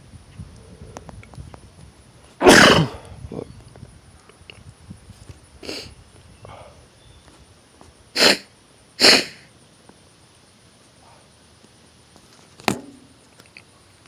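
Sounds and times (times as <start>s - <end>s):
person sneezing: 2.4s - 3.0s, 5.6s - 5.9s, 8.2s - 8.4s, 9.0s - 9.4s.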